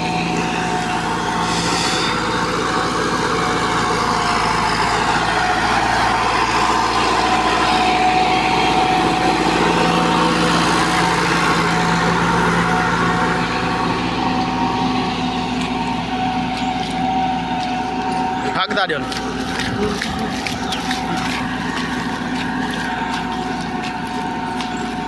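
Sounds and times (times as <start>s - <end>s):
combine harvester running: 0.0s - 25.0s.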